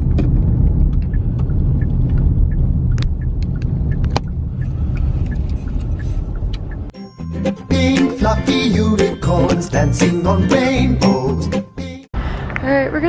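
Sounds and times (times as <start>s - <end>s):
car road noise rumble: 0.0s - 6.9s.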